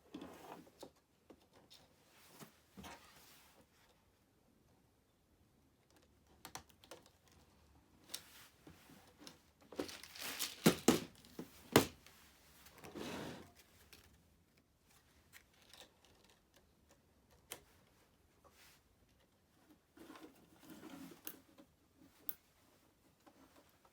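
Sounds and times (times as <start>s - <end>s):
plastic parts clicking and knocking: 9.1s - 12.0s.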